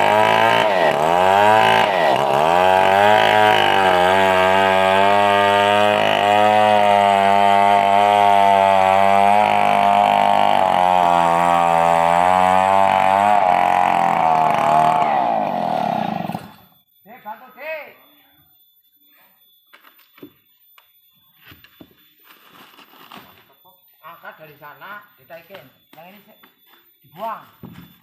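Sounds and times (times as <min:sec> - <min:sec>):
engine-driven saw cutting log: 0:00.0 - 0:16.7.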